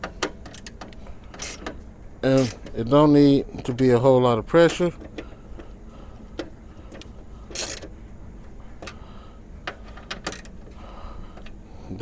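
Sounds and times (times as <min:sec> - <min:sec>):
ratchet pawl rasp: 0:00.2 - 0:02.7, 0:06.4 - 0:07.9, 0:09.6 - 0:11.6
ratchet wrench clicks: 0:00.2 - 0:02.8, 0:06.4 - 0:07.9, 0:09.7 - 0:10.6.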